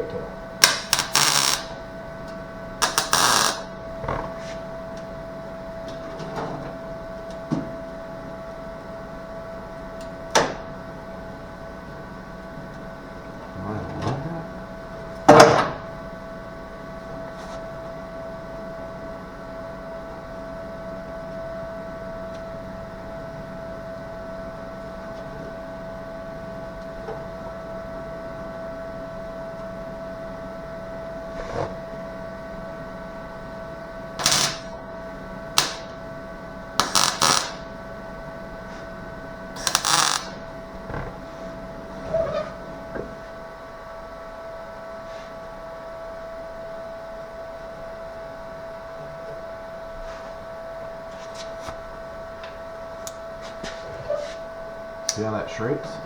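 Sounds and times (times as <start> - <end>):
steady electrical hum: 0.0 - 56.0
welding crackle: 0.6 - 1.8, 2.8 - 4.3, 34.2 - 34.8, 35.6 - 35.9, 36.8 - 37.7, 39.6 - 40.4.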